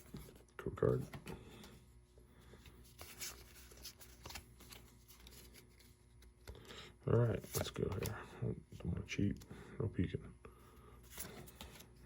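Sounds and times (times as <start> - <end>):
trading cards rustling and ticking: 2.5 - 6.8.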